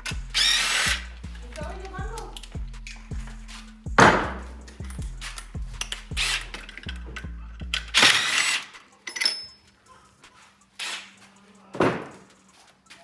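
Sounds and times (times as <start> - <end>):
background music with bass line: 0.0 - 8.4
hand tools clattering against metal: 1.3 - 9.8.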